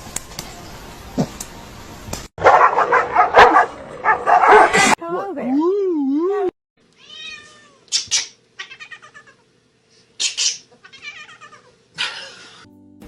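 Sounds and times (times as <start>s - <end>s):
cat meowing: 7.0s - 7.8s, 8.6s - 9.4s, 10.8s - 11.8s.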